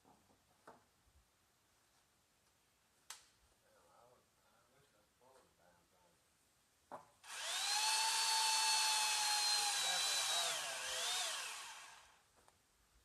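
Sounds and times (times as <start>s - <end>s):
power saw motor whining: 7.3s - 12.2s.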